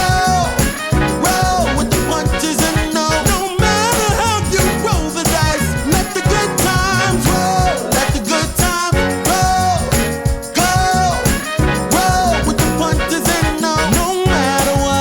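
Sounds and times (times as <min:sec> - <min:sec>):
pop music: 0:00.0 - 0:15.0.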